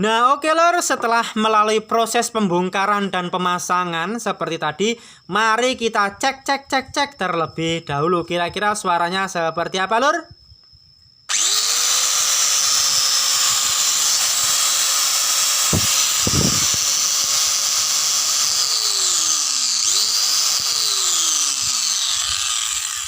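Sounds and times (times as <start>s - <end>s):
electric grinder whining: 11.3s - 23.0s.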